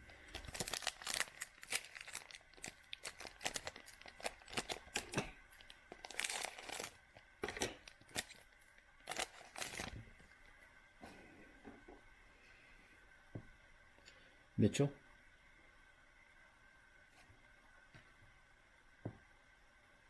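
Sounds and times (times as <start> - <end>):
wrapper tearing and crinkling: 0.2 - 10.0.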